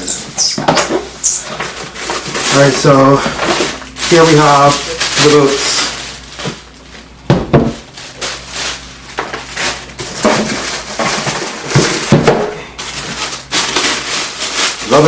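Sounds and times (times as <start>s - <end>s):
objects knocking and clattering: 0.4s - 4.0s, 7.3s - 7.9s, 9.2s - 14.0s
rustling: 1.2s - 15.0s.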